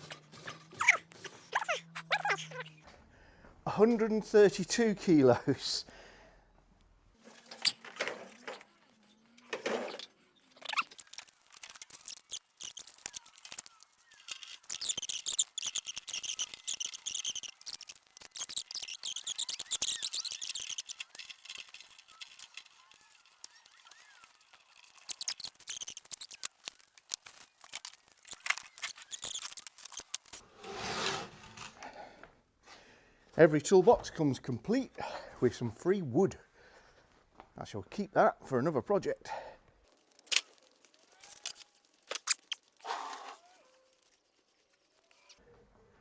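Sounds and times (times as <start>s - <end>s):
rustling and scraping: 9.4s - 31.8s, 39.9s - 45.4s
clicks and crackles of handled materials: 10.6s - 30.4s, 39.8s - 45.4s.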